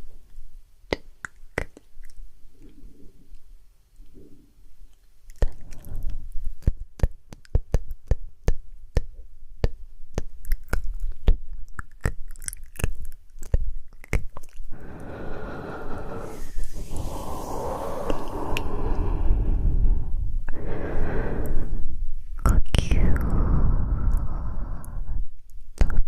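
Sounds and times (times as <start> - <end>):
steady noise: 14.8 - 24.0.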